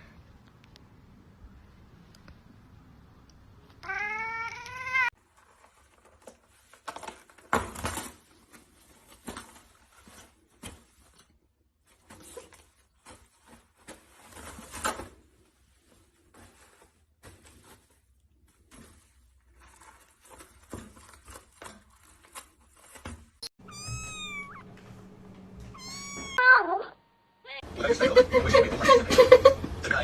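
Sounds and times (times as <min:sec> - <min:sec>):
cat meowing: 0:03.8 - 0:05.1, 0:23.6 - 0:24.7, 0:25.7 - 0:27.5
knocks and rustling: 0:05.3 - 0:26.4.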